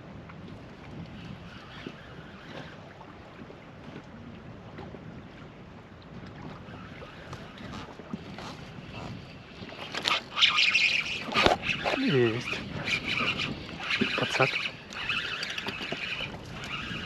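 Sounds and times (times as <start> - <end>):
water lapping against boat: 0.0 - 17.0
wind on microphone: 0.0 - 17.0.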